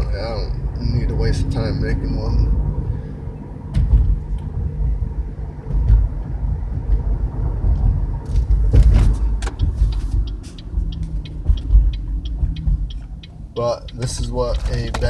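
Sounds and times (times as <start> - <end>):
road drone and hum: 0.0 - 15.0
light regular ticking: 7.7 - 15.0
brief bump or rustle: 8.4 - 10.2.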